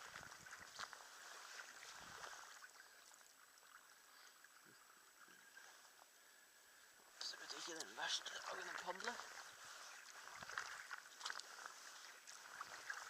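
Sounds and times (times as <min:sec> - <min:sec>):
paddle splashing and dripping water: 0:00.0 - 0:13.0.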